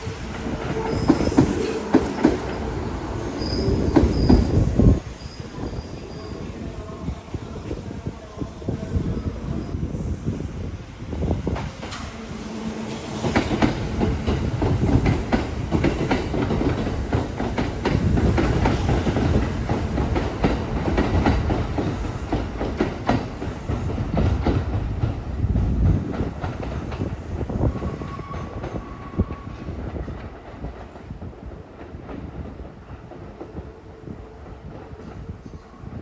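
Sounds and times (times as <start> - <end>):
train wheels clacking over rails: 0.0 - 5.8, 11.4 - 33.6.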